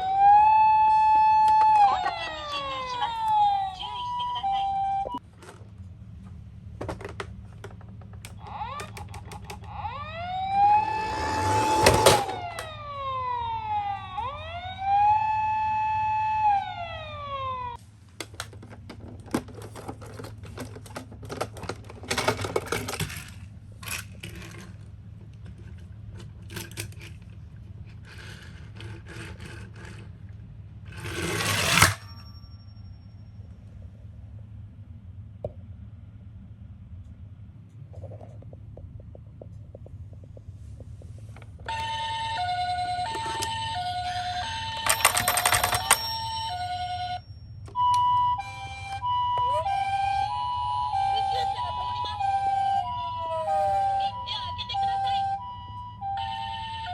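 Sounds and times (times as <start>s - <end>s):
toy ambulance siren wailing: 0.0s - 5.2s, 8.2s - 17.8s, 41.6s - 56.9s
toy cars clicking and rattling: 6.9s - 9.7s, 18.2s - 32.0s, 41.8s - 48.0s
toy cars rushing: 8.4s - 12.8s, 25.6s - 32.3s, 41.8s - 47.2s.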